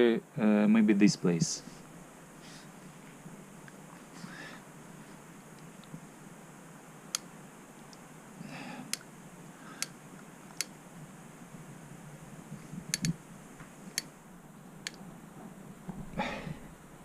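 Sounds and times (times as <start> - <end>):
suspension fork clicking: 12.9 - 13.2.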